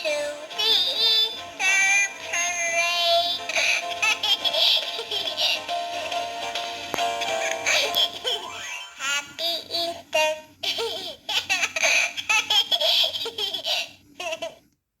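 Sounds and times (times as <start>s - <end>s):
toy speaker laughing voice: 7.3s - 9.4s, 10.6s - 14.6s.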